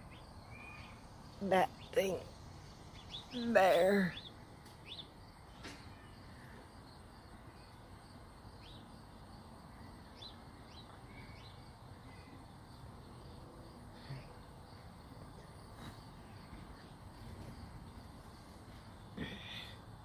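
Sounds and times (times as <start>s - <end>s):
low outdoor background hiss: 0.0s - 20.0s
faint bird chirps: 0.1s - 2.3s, 9.7s - 13.3s.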